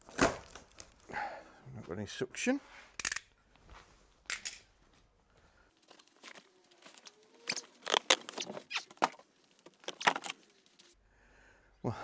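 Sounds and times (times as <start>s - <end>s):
packing material crinkling: 5.8s - 11.0s.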